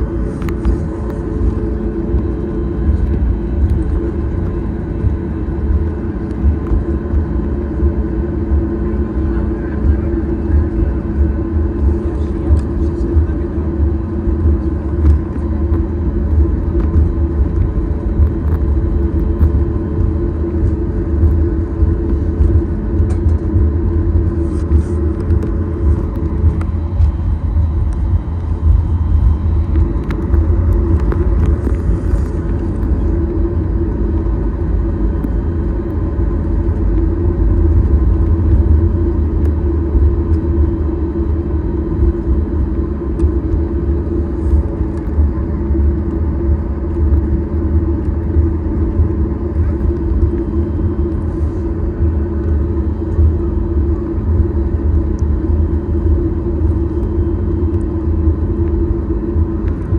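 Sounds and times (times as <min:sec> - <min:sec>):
airplane cabin rumble: 0:00.0 - 0:59.9
jet engines humming: 0:00.0 - 0:59.9.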